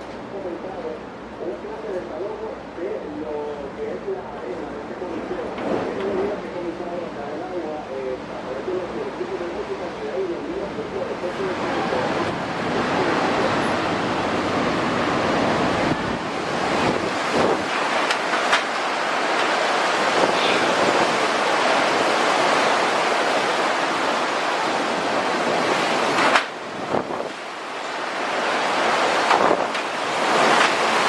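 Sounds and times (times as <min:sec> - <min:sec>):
strong wind buffeting microphone: 0:10.7 - 0:31.0.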